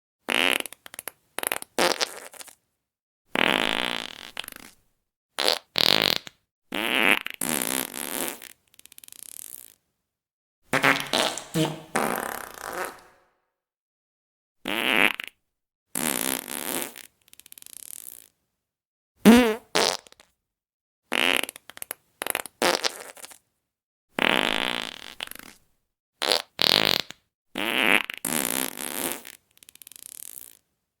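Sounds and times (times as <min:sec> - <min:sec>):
fart sounds: 0:00.3 - 0:02.6, 0:03.3 - 0:04.8, 0:05.4 - 0:09.8, 0:10.7 - 0:13.3, 0:14.6 - 0:15.4, 0:16.0 - 0:17.1, 0:19.2 - 0:20.2, 0:21.1 - 0:23.4, 0:24.2 - 0:25.6, 0:26.2 - 0:30.6.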